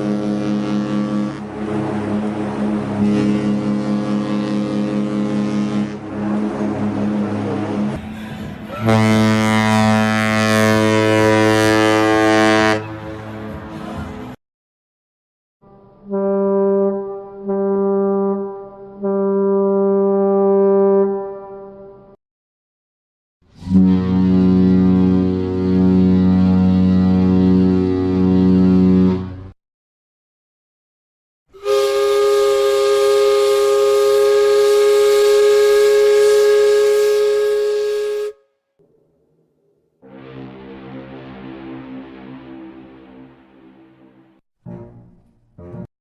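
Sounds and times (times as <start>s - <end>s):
ship's horn blasts: 0.0s - 14.4s, 15.7s - 22.2s, 23.5s - 29.6s, 31.6s - 38.5s.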